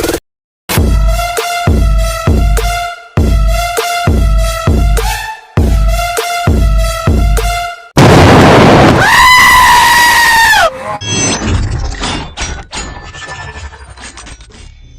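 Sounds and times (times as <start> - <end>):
music beat: 0.0 - 7.9
distorted noise blast: 8.0 - 9.6
high scream-like cry: 9.0 - 10.8.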